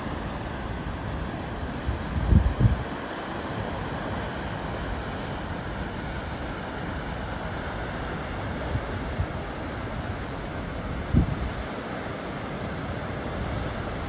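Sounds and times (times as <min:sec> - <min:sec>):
wind bumps on microphone: 0:01.9 - 0:03.0, 0:10.9 - 0:11.6.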